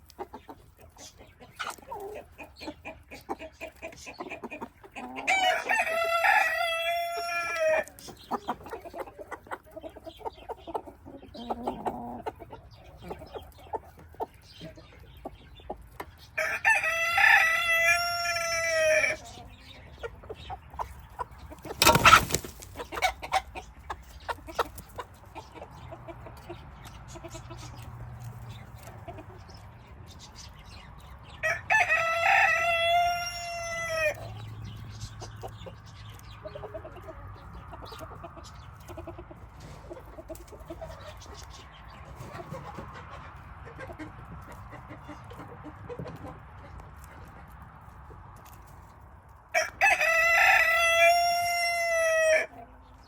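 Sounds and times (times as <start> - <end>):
chickens clucking: 0.0 - 53.0
rooster crowing: 5.3 - 7.9, 16.4 - 19.2, 31.4 - 34.2, 49.6 - 52.5.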